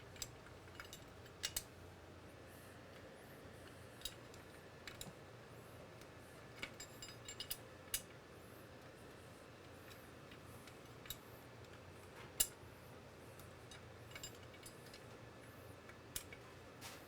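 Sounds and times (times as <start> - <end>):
light metal clicks and clinks: 0.2 - 1.7, 6.5 - 8.2, 9.6 - 12.6, 13.4 - 15.2, 15.9 - 16.4.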